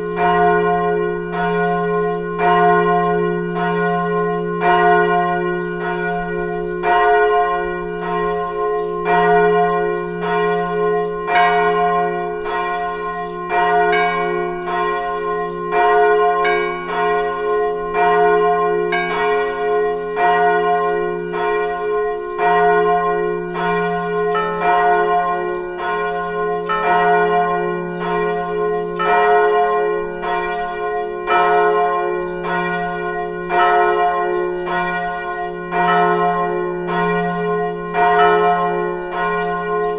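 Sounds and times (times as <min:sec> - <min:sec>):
church bells ringing: 0:00.0 - 0:39.9.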